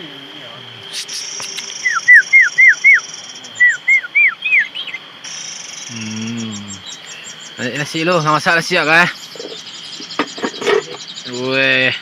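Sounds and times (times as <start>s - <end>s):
high insect drone: 0.0s - 12.0s
bird whistling descending notes: 0.9s - 6.9s.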